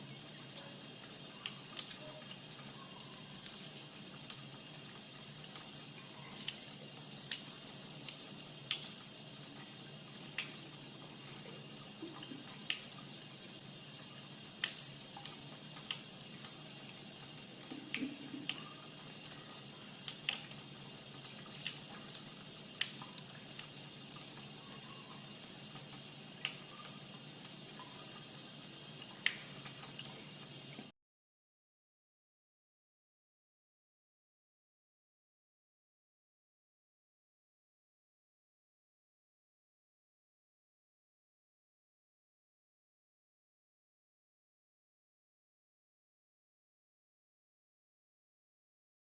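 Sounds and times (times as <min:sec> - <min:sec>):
running water: 0:00.0 - 0:30.9
sharp ticks or drips: 0:00.0 - 0:30.9.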